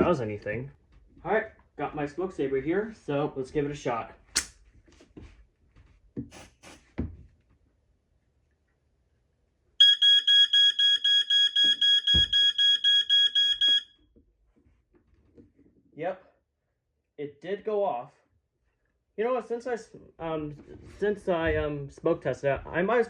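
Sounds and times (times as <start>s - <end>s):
smoke alarm pulsing beeps: 9.8s - 14.0s.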